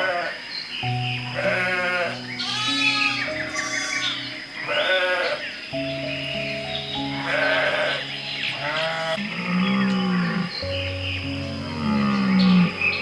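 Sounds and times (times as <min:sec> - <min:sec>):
soft piano and guitar music: 0:00.6 - 0:13.0
bleat-like animal calls: 0:01.3 - 0:05.5, 0:07.2 - 0:10.5.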